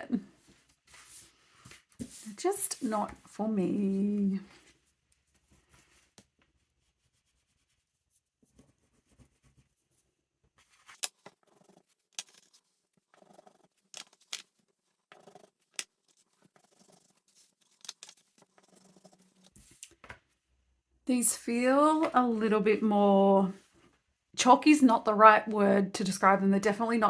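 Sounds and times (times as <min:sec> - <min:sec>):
scratchy strokes: 0:15.0 - 0:19.8.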